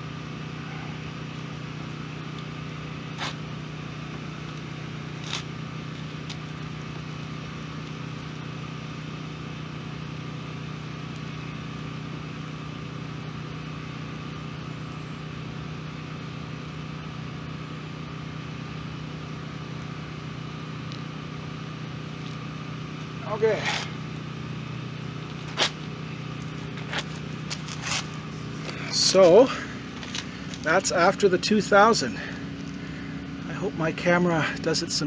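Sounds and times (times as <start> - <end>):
machine hum: 0.0 - 35.0.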